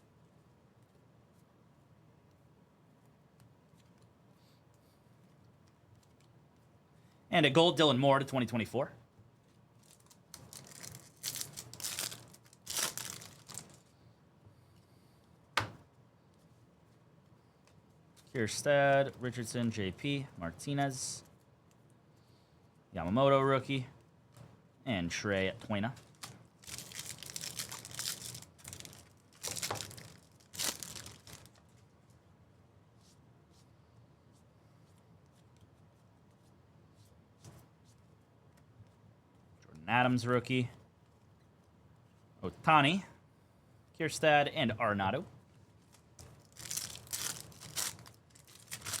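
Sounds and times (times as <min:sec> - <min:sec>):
wrappers tearing and crinkling: 0:09.8 - 0:13.9, 0:26.0 - 0:31.7, 0:45.8 - 0:49.0.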